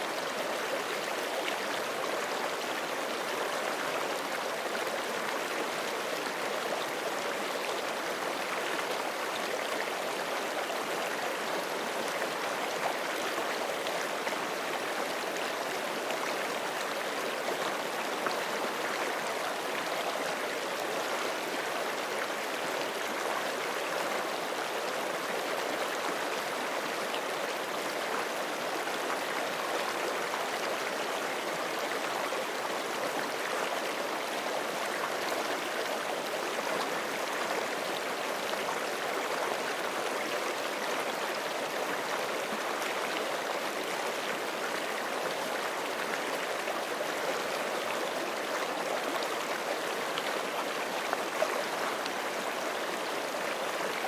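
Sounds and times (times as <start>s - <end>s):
creek flowing over rocks: 0.0s - 54.0s.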